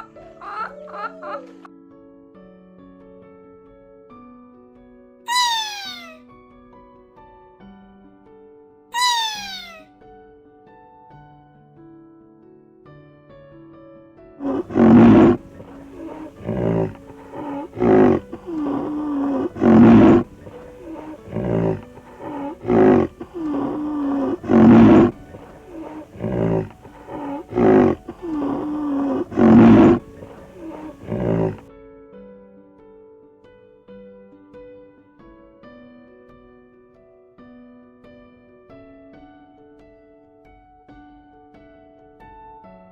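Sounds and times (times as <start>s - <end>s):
animal calls: 0.0s - 1.7s, 5.3s - 6.2s, 9.0s - 9.8s, 14.4s - 31.6s
animal roaring: 14.4s - 31.6s.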